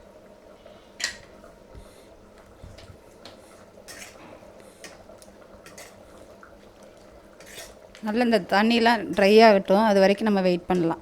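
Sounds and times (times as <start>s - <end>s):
spoon scraping and clinking pan: 3.9s - 4.2s.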